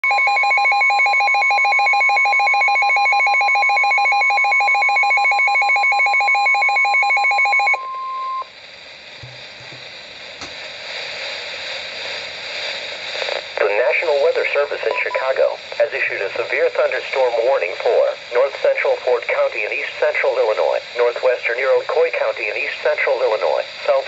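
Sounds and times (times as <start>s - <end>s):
radio static hiss: 8.4s - 24.0s.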